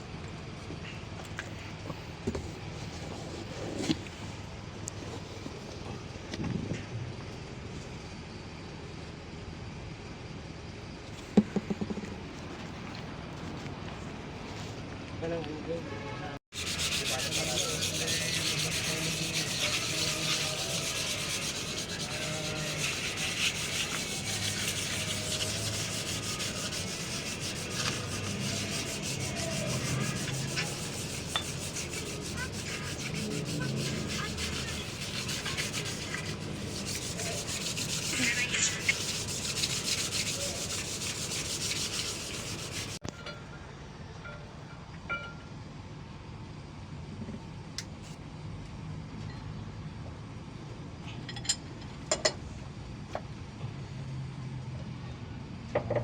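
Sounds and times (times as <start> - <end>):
hand sanding rasp: 16.5 - 43.0.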